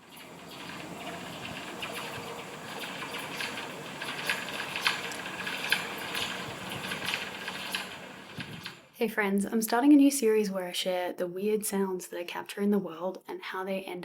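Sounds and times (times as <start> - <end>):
electrical crackles and squeals: 0.0 - 8.9
train rushing noise: 0.0 - 8.9.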